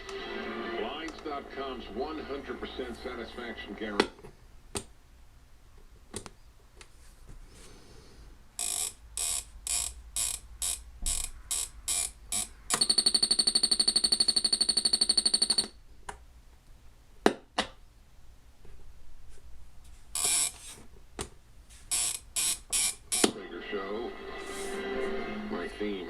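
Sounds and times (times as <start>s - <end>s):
alarm clock buzzer: 8.6s - 15.7s, 20.2s - 20.6s, 21.9s - 23.3s.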